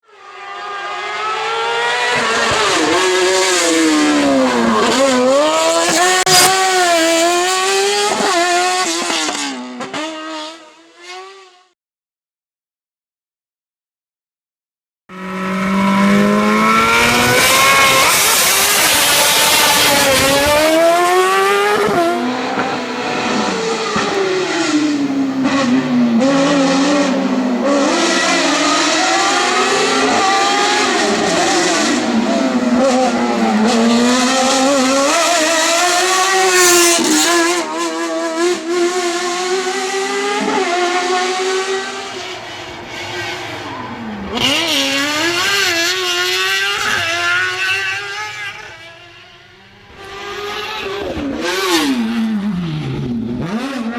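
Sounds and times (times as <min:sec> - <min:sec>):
race car engine revving: 0:00.2 - 0:11.5, 0:15.1 - 0:53.9.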